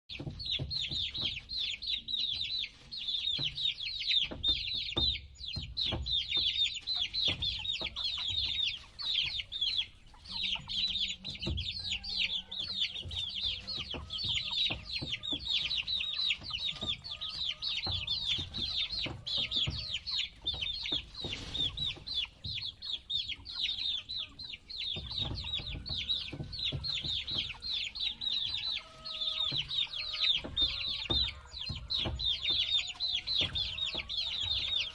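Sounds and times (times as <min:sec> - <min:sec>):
low thumps and rustling: 0:00.1 - 0:23.3, 0:24.1 - 0:34.9
baby chicks peeping: 0:00.1 - 0:34.9.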